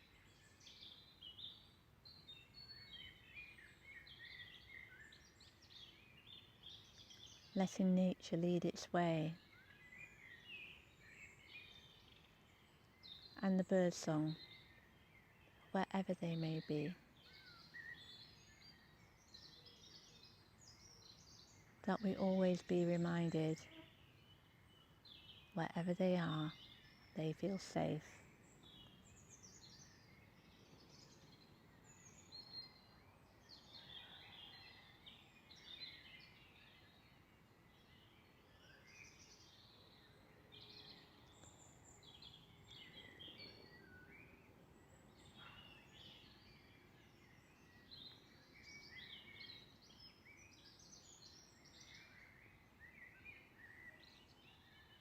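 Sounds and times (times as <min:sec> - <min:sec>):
birds singing: 0:00.0 - 0:55.0.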